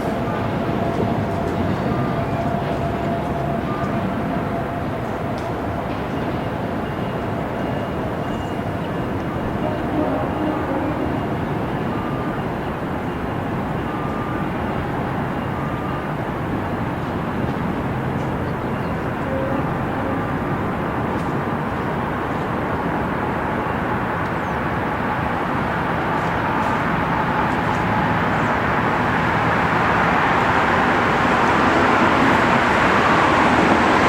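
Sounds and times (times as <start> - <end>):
city traffic rush: 0.0 - 34.0
distant warning sirens: 0.0 - 34.0.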